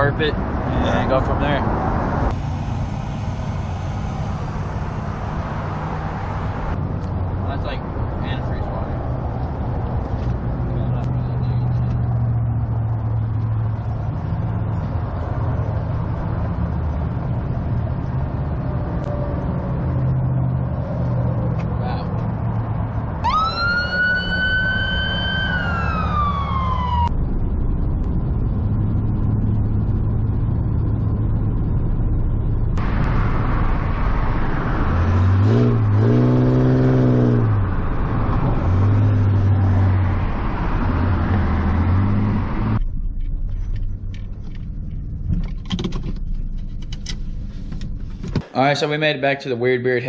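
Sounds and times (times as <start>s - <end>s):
car engine drone: 0.0s - 48.5s
road and wind noise: 0.0s - 50.0s
rising whine: 1.8s - 7.2s.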